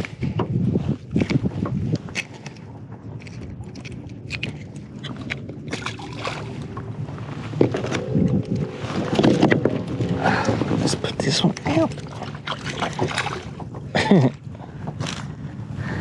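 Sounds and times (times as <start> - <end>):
fishing gear clicks and knocks: 0.0 - 6.9, 11.2 - 15.4
steady low rumble: 0.0 - 16.0.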